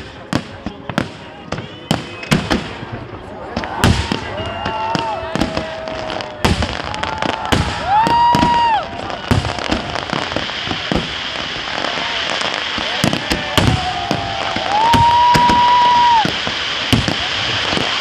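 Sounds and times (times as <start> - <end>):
fireworks bangs and crackles: 0.0 - 18.0
high whistling tone: 1.6 - 2.5.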